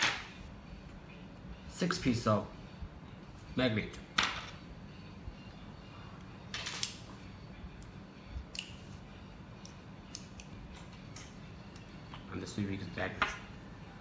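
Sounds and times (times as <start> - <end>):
faint steady hum: 0.1 - 14.0
small magnets clicking together: 9.6 - 11.9.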